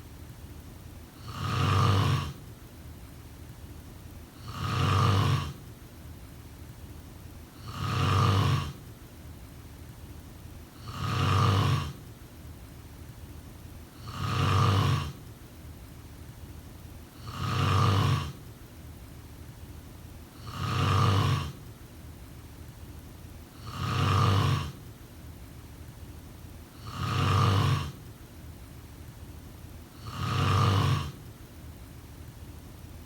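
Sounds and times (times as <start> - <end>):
person snoring: 1.2 - 2.4, 4.4 - 5.6, 7.6 - 8.8, 10.8 - 12.0, 14.0 - 15.2, 17.2 - 18.4, 20.4 - 21.6, 23.6 - 24.8, 26.8 - 28.0, 30.0 - 31.2.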